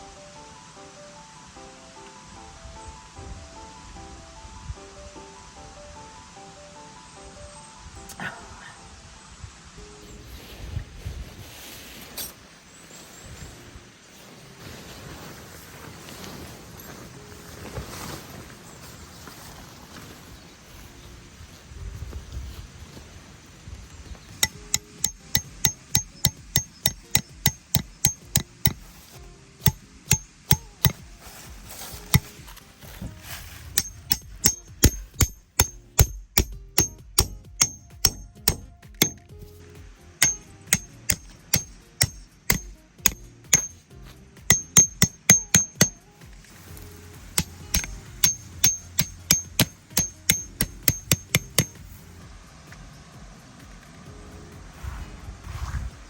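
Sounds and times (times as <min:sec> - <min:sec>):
hammer striking metal tent stakes: 0:24.4 - 0:32.5, 0:33.2 - 0:39.5, 0:40.2 - 0:46.1, 0:46.8 - 0:52.0.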